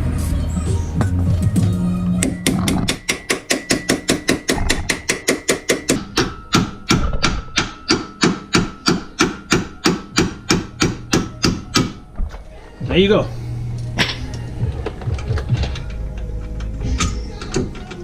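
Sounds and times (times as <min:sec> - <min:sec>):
mallet striking metal bolt: 0:02.2 - 0:12.0.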